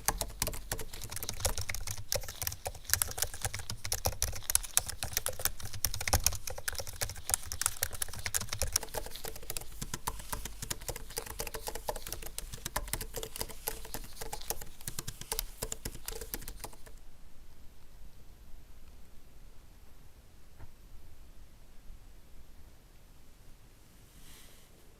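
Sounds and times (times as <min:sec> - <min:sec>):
fast typing on keyboard: 0:00.0 - 0:17.0.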